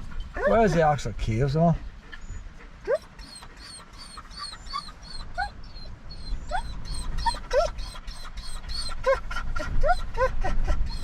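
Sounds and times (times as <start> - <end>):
dog whimpering: 0.4 - 0.9, 2.8 - 11.0.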